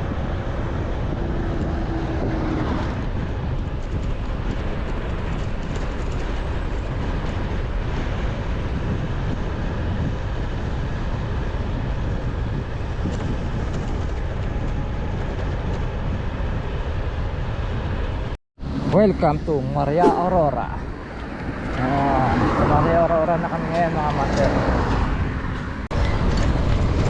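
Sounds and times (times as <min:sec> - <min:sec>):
wind rushing: 0:00.0 - 0:05.4, 0:19.8 - 0:22.7
vehicle road noise: 0:00.0 - 0:27.0.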